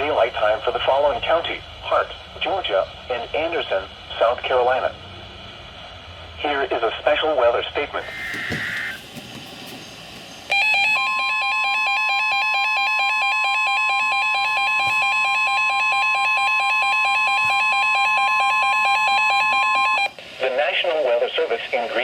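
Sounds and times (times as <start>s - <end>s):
two-note electronic alarm warble: 10.5s - 20.1s
steady warning alarm tone: 10.5s - 20.2s.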